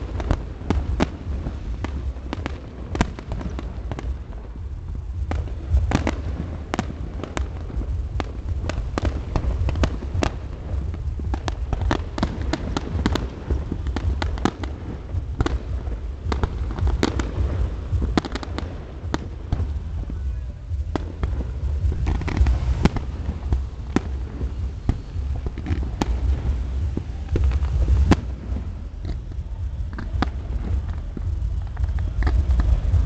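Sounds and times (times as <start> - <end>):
continuous low rumble: 0.0 - 33.0
fireworks bangs and cracks: 0.0 - 33.0.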